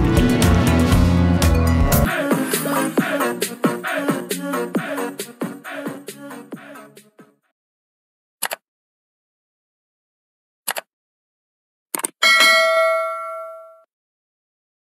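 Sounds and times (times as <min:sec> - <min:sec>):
short clicks: 0:08.4 - 0:08.6, 0:10.7 - 0:10.9
bright bell ding: 0:12.2 - 0:13.9.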